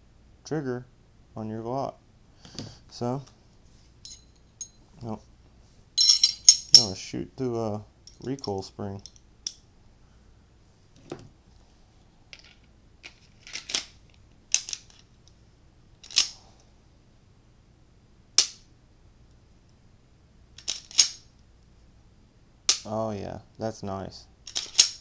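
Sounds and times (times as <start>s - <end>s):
pistol metallic clicks: 16.0s - 16.4s, 18.4s - 18.7s, 20.6s - 21.3s, 22.7s - 22.9s, 24.5s - 25.0s.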